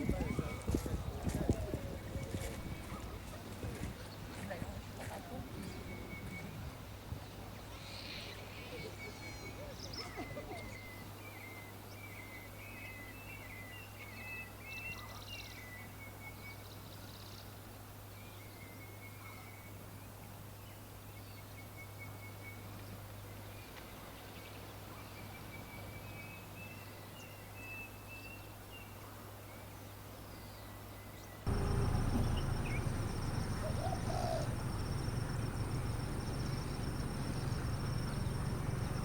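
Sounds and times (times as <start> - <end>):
small birds chirping: 30.4 - 39.0
steady low hum: 31.5 - 39.0.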